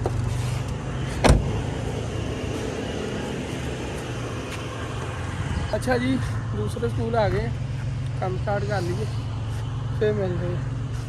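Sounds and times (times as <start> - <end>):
car engine and road noise: 0.0 - 11.0.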